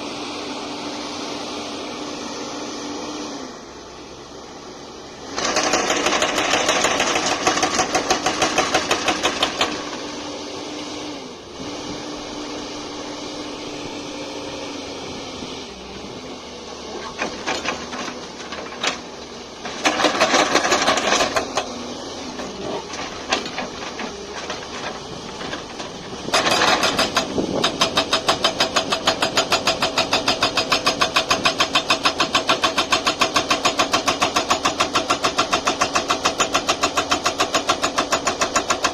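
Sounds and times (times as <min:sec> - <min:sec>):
diesel engine running: 0:00.0 - 0:38.9
hydraulic breaker hammering: 0:05.4 - 0:09.8, 0:19.7 - 0:21.7, 0:22.4 - 0:38.9.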